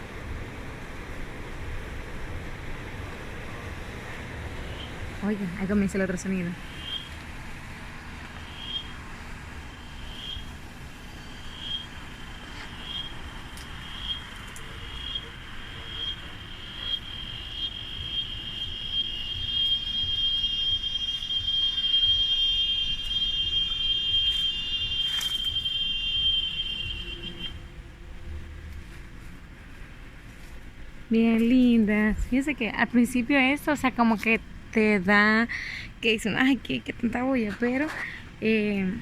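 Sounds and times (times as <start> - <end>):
cicada chirping and buzzing: 4.4 - 27.6.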